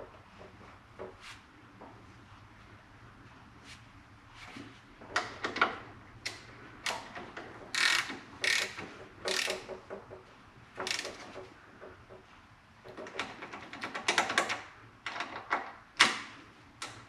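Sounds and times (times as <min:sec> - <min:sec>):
socket ratchet clicking: 0:07.8 - 0:09.7, 0:10.8 - 0:11.3.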